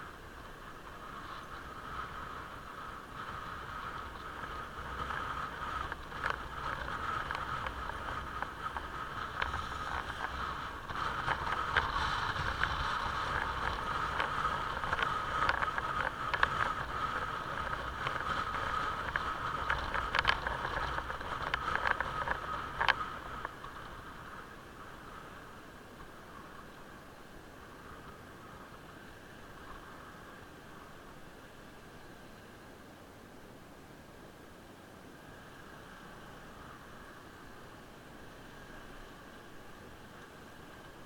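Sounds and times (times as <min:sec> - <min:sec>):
motorcycle engine humming: 0:00.0 - 0:27.0.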